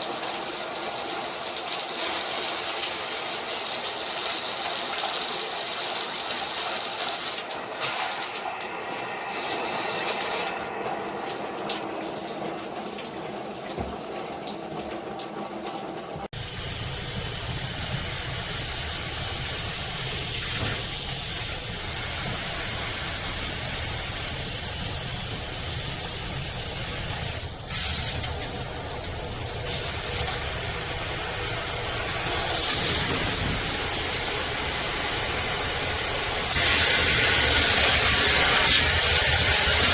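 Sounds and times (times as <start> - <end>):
water spraying from shower head: 0.0 - 11.3, 16.4 - 39.9.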